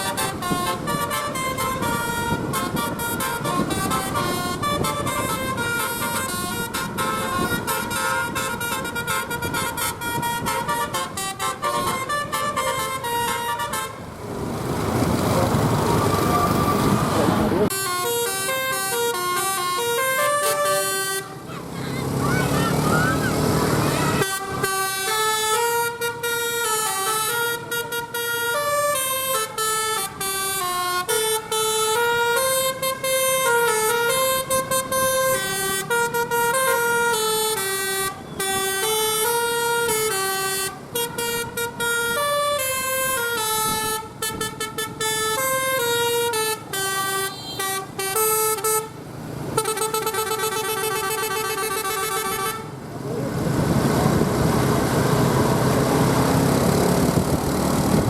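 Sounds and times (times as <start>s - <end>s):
musical air horn playing a tune: 0.0s - 14.0s, 17.7s - 21.5s, 23.7s - 49.0s, 49.6s - 52.7s
loud vehicle engine: 0.0s - 58.0s.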